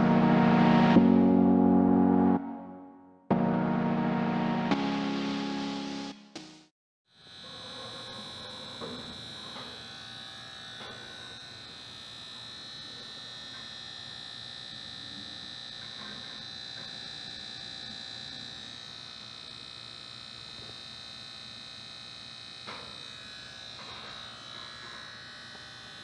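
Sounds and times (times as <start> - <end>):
high-pitched electrical whine: 7.2 - 26.0.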